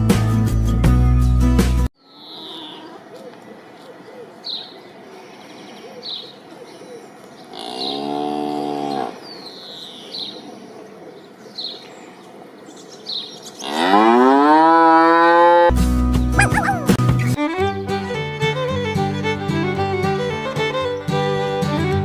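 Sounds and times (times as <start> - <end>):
cow mooing: 7.5 - 9.2, 13.6 - 15.7
high chirps: 16.4 - 17.4.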